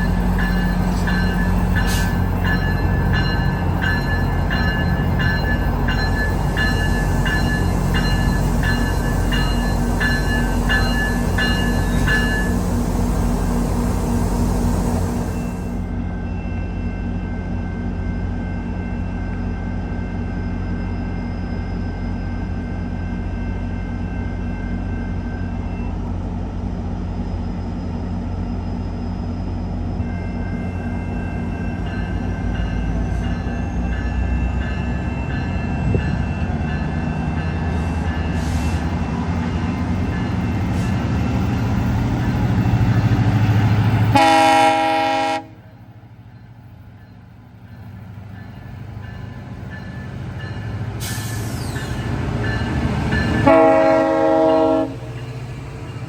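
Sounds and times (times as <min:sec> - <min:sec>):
diesel train engine hum: 0:00.0 - 0:56.0
train horn: 0:44.1 - 0:45.8, 0:53.4 - 0:55.1.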